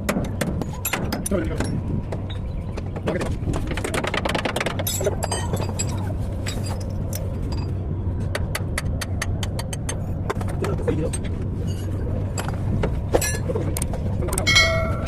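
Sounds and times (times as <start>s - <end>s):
low engine hum: 0.0s - 15.0s
sharp metallic clinks and taps: 4.6s - 15.0s.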